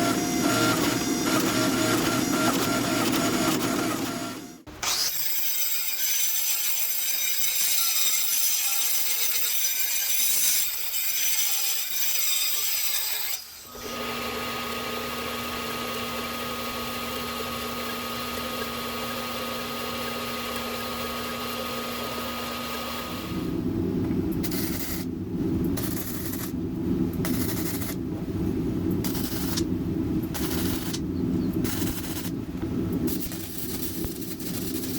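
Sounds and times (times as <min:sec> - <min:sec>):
motor humming and whining: 0:00.0 - 0:05.2, 0:13.5 - 0:34.9.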